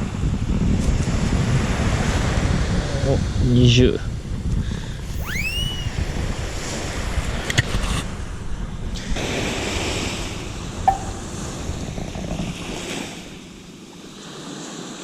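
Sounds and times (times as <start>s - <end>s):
short rising squeal: 5.1s - 6.3s.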